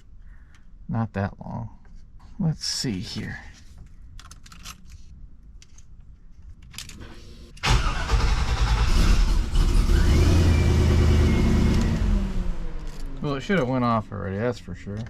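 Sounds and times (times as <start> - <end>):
truck engine starting and running: 7.0 - 14.6.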